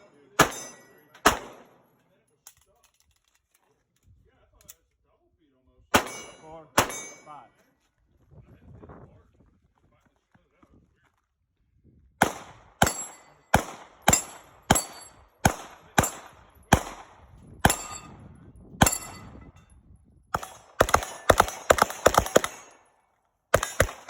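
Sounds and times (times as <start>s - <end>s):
gunshots: 0.0s - 1.8s, 5.9s - 7.2s, 12.2s - 18.1s, 20.4s - 22.8s, 23.5s - 24.0s.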